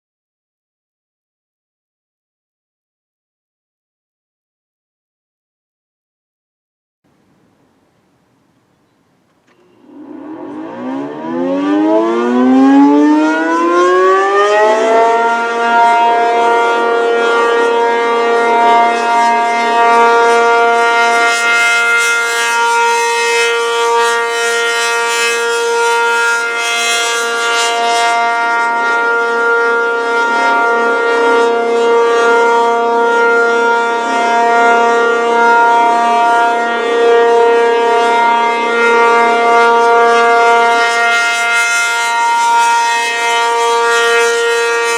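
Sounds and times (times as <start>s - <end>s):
tornado warning siren: 9.4s - 44.9s.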